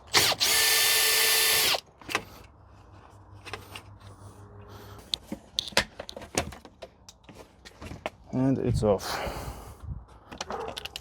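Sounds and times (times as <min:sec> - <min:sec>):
electric drill-driver running: 0:00.1 - 0:01.8.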